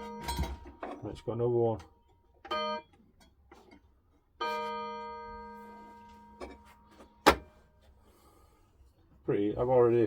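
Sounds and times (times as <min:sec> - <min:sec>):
pendulum clock chime: 0:00.0 - 0:00.9, 0:02.5 - 0:03.0, 0:04.4 - 0:06.5.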